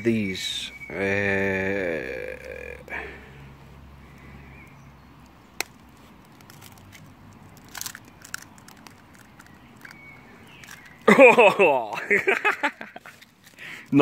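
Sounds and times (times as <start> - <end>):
eggshell cracking clicks: 5.2 - 11.1.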